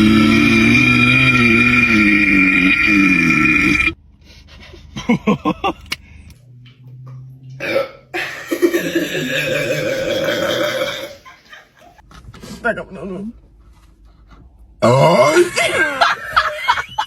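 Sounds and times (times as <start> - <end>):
person burping: 0.0 - 4.0, 7.6 - 11.3, 14.8 - 15.5.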